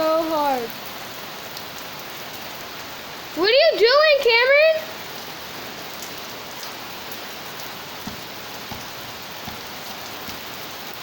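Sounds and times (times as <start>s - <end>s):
heavy rain hissing: 0.0s - 11.0s
soft low taps of drops: 8.0s - 10.5s.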